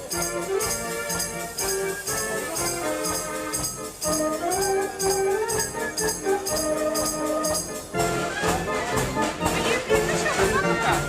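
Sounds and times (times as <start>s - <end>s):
fairground organ playing: 0.0s - 11.0s.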